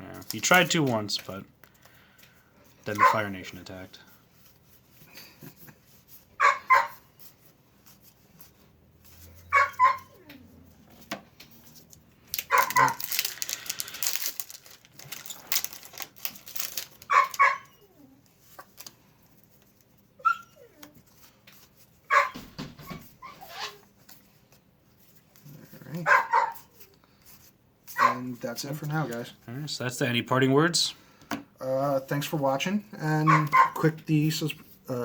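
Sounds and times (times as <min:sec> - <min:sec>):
rustling: 0:00.2 - 0:20.1
dog barking: 0:03.0 - 0:03.2, 0:06.4 - 0:07.0, 0:09.5 - 0:10.2, 0:12.5 - 0:13.0, 0:17.1 - 0:17.8, 0:22.1 - 0:22.4, 0:26.0 - 0:26.7, 0:28.0 - 0:28.2, 0:33.3 - 0:33.8.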